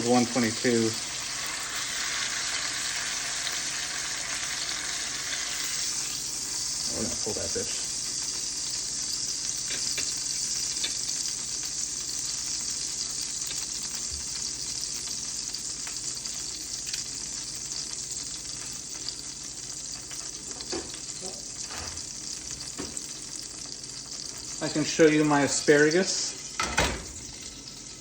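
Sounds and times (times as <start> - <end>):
hot oil sizzling: 0.0 - 28.0
utensils clicking against pan: 9.6 - 11.0.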